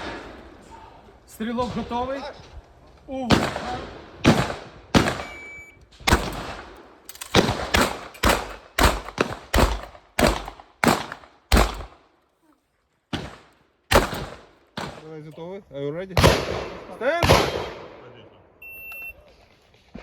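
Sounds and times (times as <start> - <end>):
shotgun shots with echo: 3.3 - 5.4, 6.0 - 12.0, 13.1 - 15.2, 16.2 - 18.0.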